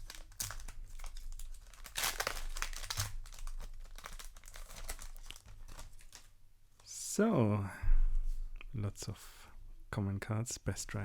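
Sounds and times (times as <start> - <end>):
foil wrapper crinkling and tearing: 0.0 - 6.3.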